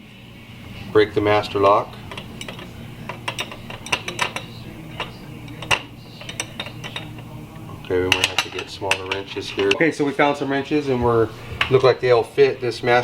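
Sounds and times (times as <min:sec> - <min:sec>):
wrenches clinking against padlock: 0:02.1 - 0:07.3.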